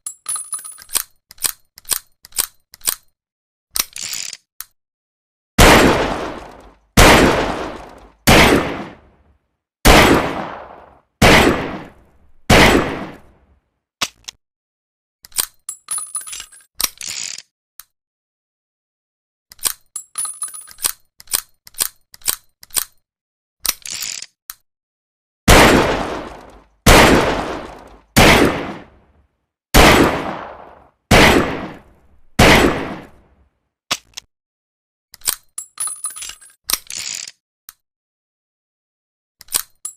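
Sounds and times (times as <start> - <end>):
revolver gunshots: 5.6 - 9.2, 9.9 - 13.3, 25.5 - 29.0, 29.8 - 33.2.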